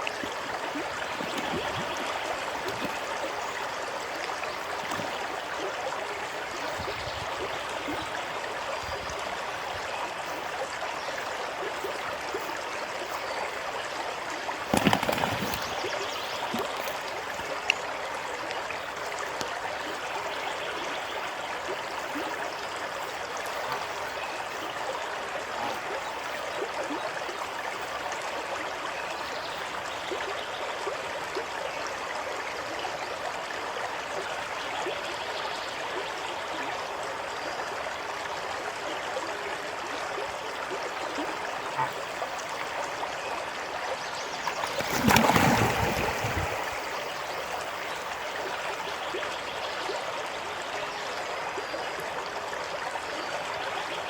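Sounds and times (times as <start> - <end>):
water trickling: 0.0 - 28.3, 40.5 - 49.2.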